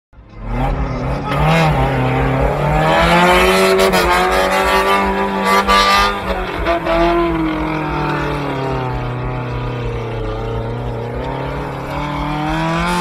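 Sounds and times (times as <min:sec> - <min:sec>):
off-road vehicle engine revving: 0:00.2 - 0:13.0.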